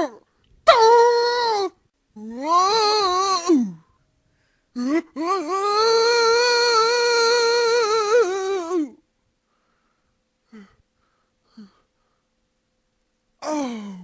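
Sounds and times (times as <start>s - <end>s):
faint vocal sounds: 0.0s - 4.0s, 4.7s - 9.1s, 10.0s - 12.2s, 13.4s - 14.0s.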